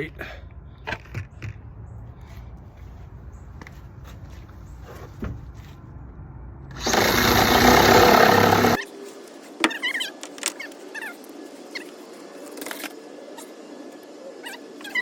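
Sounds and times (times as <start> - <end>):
power saw cutting plywood: 6.7 - 8.8.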